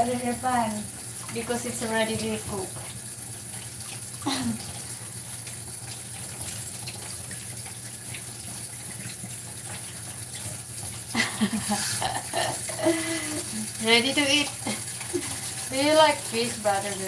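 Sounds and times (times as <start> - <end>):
kitchen water running: 0.0 - 17.0.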